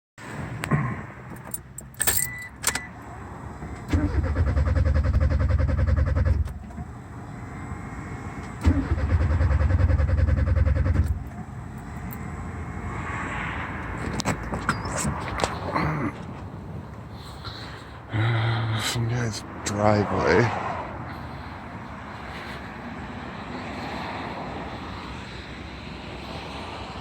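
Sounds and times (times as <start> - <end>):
keys jingling: 1.4 - 2.5
car starter cranking engine: 3.8 - 6.8, 8.4 - 11.4.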